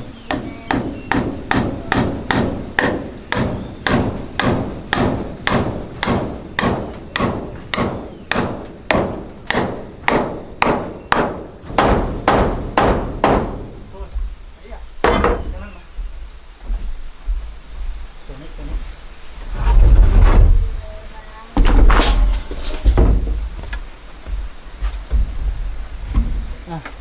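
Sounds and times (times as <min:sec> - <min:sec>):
hammer nailing into wood: 0:00.0 - 0:13.9, 0:15.0 - 0:15.7.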